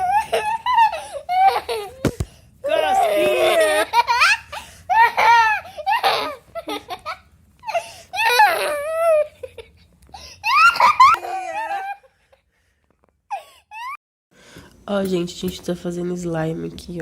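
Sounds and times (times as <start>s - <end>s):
girl laughing and squealing: 0.0s - 12.1s.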